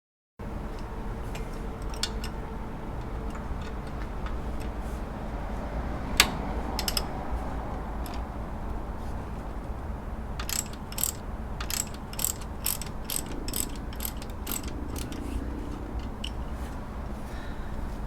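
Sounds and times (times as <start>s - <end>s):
ratchet wrench clicking: 0.8s - 2.4s, 6.2s - 8.4s, 10.4s - 16.6s.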